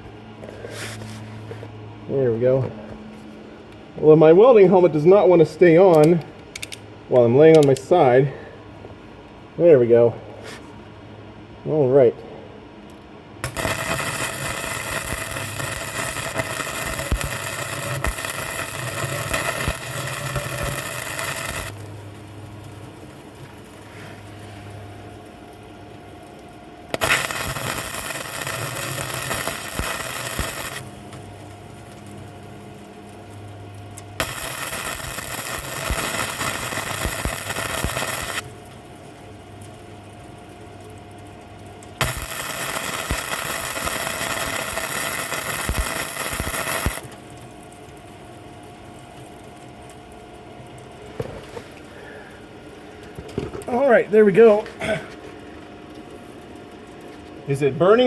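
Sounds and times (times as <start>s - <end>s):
steady hum: 0.0s - 58.0s
welding arc: 13.4s - 50.0s.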